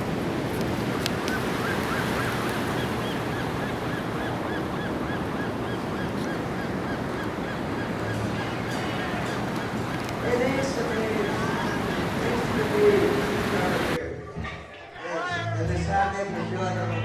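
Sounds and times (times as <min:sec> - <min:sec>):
ocean surf washing: 0:00.0 - 0:14.0
bird chirping: 0:01.2 - 0:14.0.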